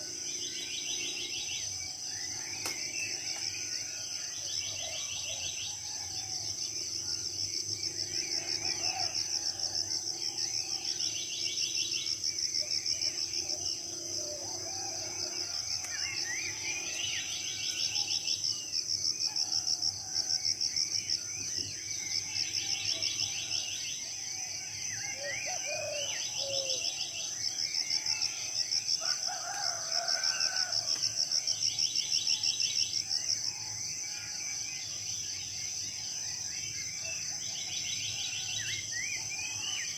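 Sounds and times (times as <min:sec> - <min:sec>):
insect drone: 0:00.0 - 0:39.9
birds chirping and whistling: 0:24.8 - 0:28.1.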